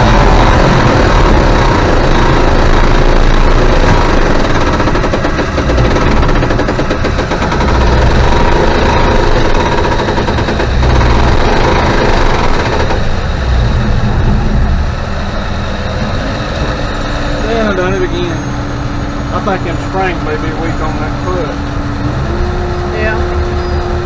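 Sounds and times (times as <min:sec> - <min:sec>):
fast mechanical clatter: 0:00.0 - 0:14.3
combine harvester engine drone: 0:00.0 - 0:24.0.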